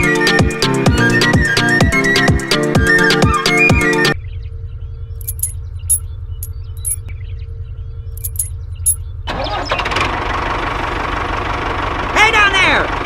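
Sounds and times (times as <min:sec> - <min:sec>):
light metallic clinks: 0:05.2 - 0:06.0, 0:06.8 - 0:07.1, 0:08.2 - 0:09.0.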